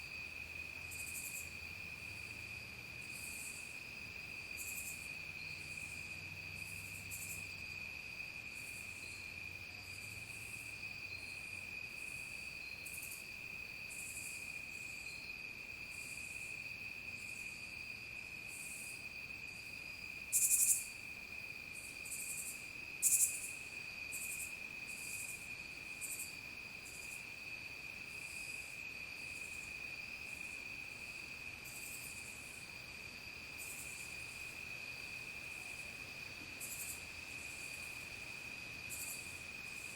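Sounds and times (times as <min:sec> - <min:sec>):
crickets trilling: 0:00.0 - 0:39.9
high-pitched insect chirps: 0:20.3 - 0:20.9, 0:22.1 - 0:25.3.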